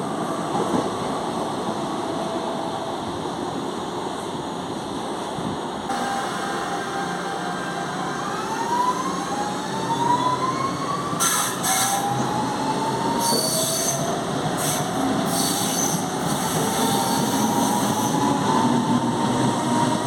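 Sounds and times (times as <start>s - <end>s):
rumble of running train: 0.0s - 20.0s
high hiss and squeal: 11.2s - 12.2s, 13.0s - 18.4s.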